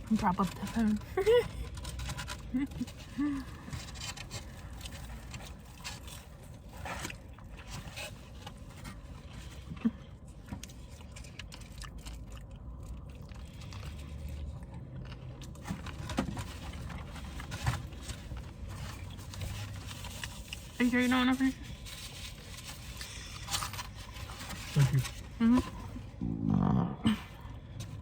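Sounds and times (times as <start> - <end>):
person chewing: 8.5 - 15.9.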